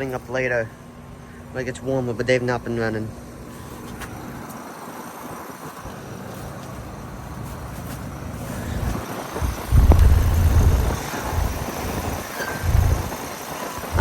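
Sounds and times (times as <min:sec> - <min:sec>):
heat pump fan humming: 0:00.0 - 0:14.0
low uneven rumbling: 0:08.6 - 0:13.3.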